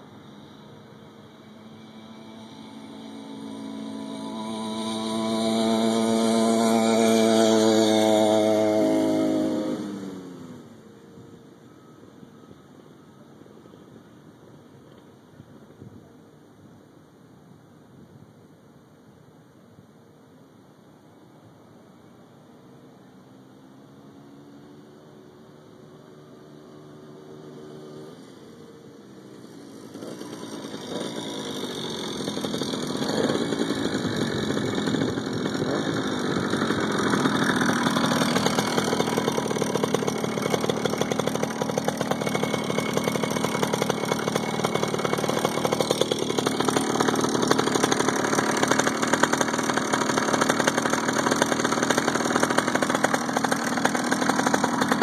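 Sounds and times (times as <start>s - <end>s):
two-stroke motorized bicycle engine: 0.0s - 10.8s, 25.8s - 55.0s.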